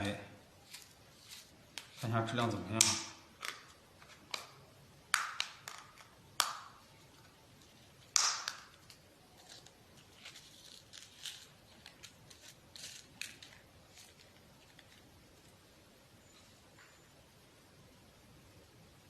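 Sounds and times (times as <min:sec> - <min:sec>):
packaging crackling and tearing: 0:07.6 - 0:15.4.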